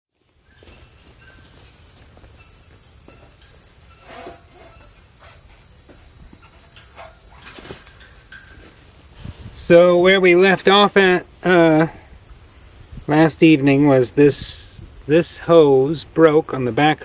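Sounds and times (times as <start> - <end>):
insects droning: 0.1 - 17.0.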